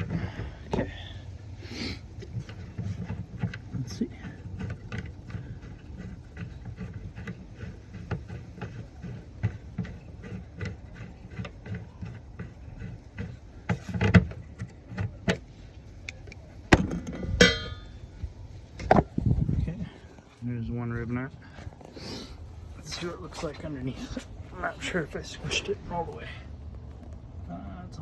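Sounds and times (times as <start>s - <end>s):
ringing metal knocks: 16.7s - 18.1s.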